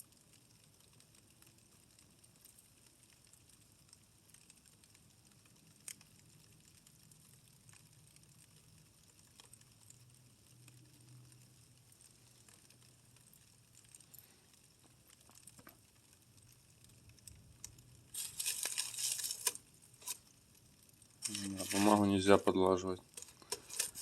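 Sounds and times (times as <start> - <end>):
faint ticks: 0.1 - 17.9
paper rustling and crumpling: 18.1 - 20.2, 21.2 - 24.0.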